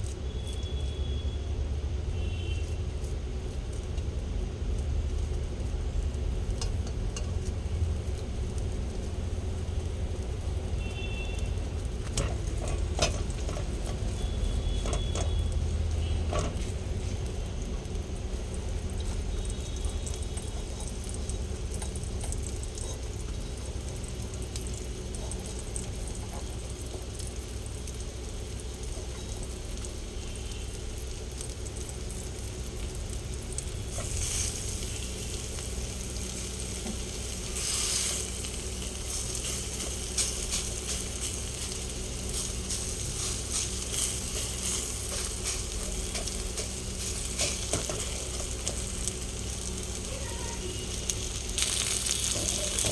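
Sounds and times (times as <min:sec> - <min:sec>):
batter sizzling in oil: 0:00.0 - 0:52.9
steady low hum: 0:01.5 - 0:52.9.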